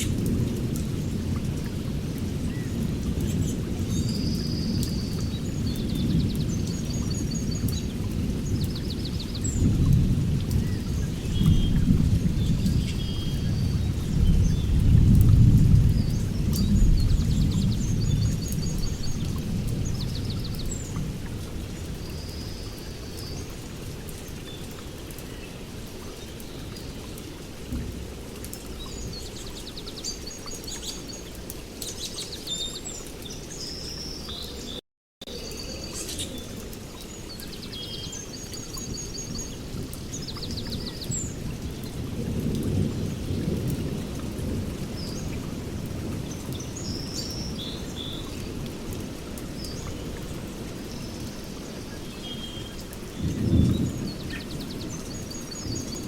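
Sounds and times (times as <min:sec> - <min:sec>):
heavy rain falling: 0:00.0 - 0:56.0
birds chirping and trilling: 0:15.9 - 0:21.0.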